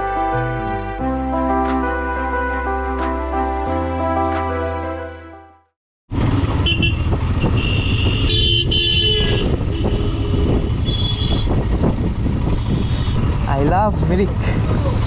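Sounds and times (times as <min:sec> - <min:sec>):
motorcycle engine and wind rumble: 0:06.1 - 0:15.0
vehicle horns tooting: 0:06.6 - 0:11.6, 0:12.5 - 0:13.3.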